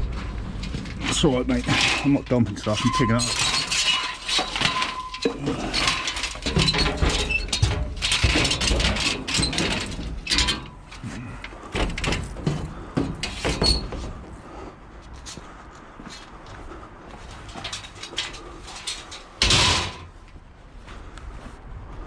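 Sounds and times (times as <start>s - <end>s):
rustling: 0.0s - 14.4s
scrap items clattering and knocking: 0.0s - 14.4s, 17.2s - 20.2s.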